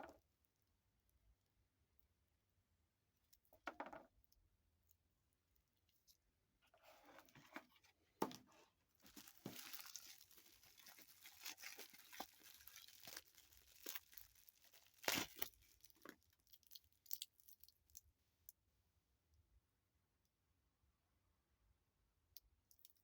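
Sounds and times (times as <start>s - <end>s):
packaging crinkling and tearing: 9.0s - 16.8s.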